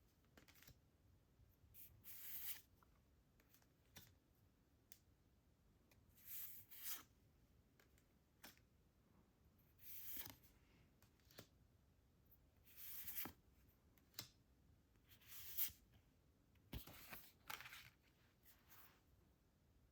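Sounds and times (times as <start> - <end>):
card packaging rustling: 16.8 - 18.2.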